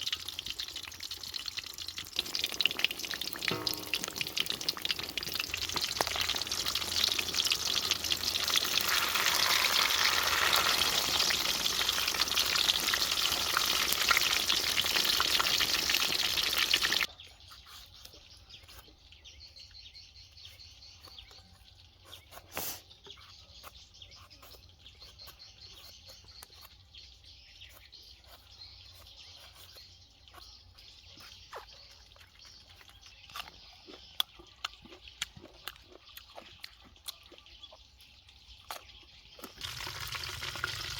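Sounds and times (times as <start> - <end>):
fish sizzling: 0.0 - 17.1, 39.6 - 40.9.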